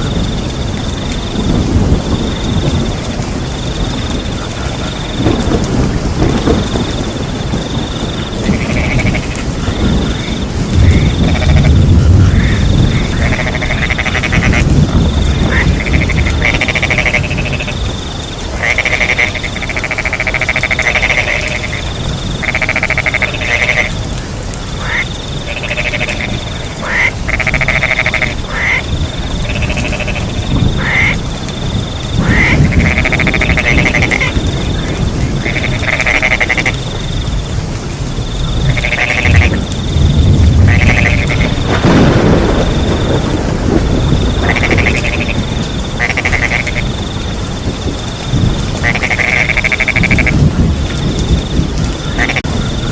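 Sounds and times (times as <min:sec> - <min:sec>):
cricket trill: 0:00.0 - 0:52.9
frogs croaking: 0:00.0 - 0:52.9
rain rushing: 0:00.0 - 0:52.9.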